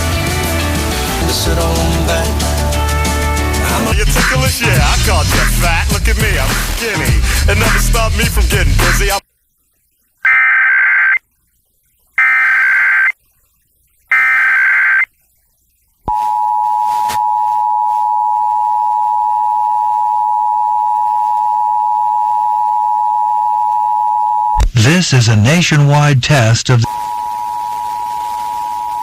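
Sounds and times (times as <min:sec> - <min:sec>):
digital data tone bursts: 0:12.2 - 0:13.1, 0:14.1 - 0:15.1.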